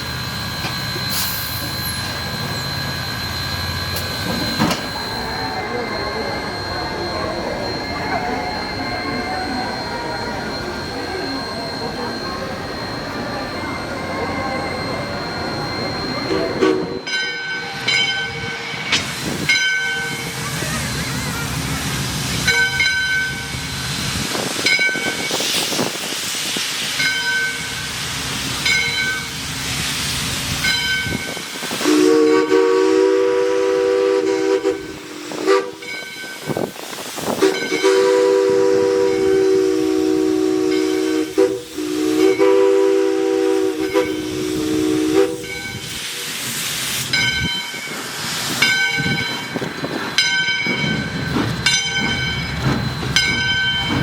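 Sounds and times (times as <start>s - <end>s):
steam hissing: 0.0s - 17.1s, 17.8s - 54.0s
locomotive bell ringing: 0.0s - 54.0s
steam whistle blasts: 16.3s - 17.1s, 31.6s - 35.9s, 37.3s - 46.2s.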